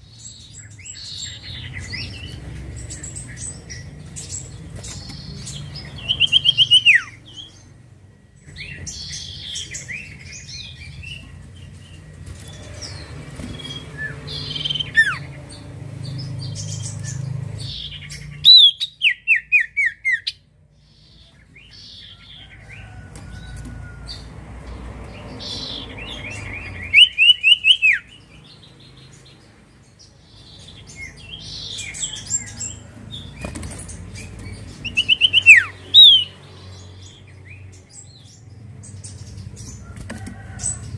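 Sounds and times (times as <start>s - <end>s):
bird song descending notes: 0.0s - 20.4s, 25.4s - 29.4s, 34.2s - 38.2s.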